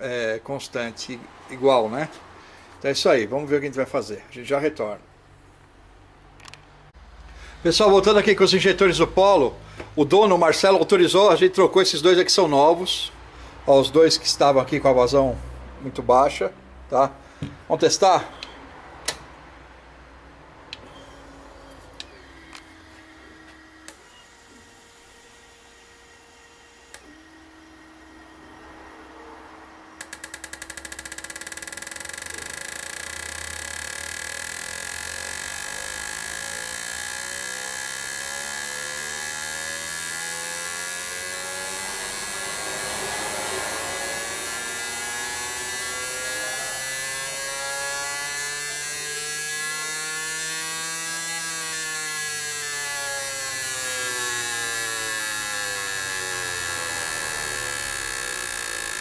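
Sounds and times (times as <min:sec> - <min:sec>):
fuel injectors pulsing buzz: 0:20.7 - 0:59.0.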